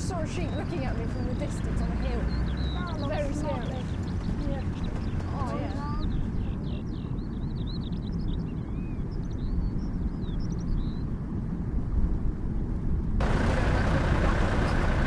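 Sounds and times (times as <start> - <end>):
small birds chirping: 0.0 - 11.4
vehicle rumbling on rough lane: 0.0 - 15.0.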